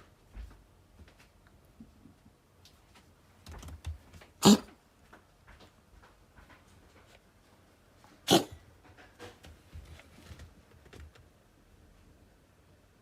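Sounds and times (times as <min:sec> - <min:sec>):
cat coughing: 0:04.4 - 0:04.8, 0:08.2 - 0:08.6.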